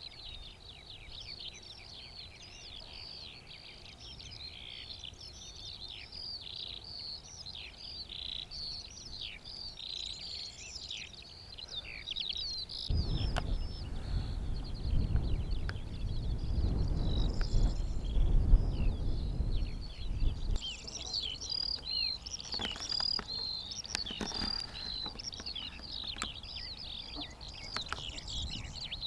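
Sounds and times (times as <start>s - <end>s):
skylark song: 0.0s - 29.0s
loud low rumbling: 12.9s - 20.6s.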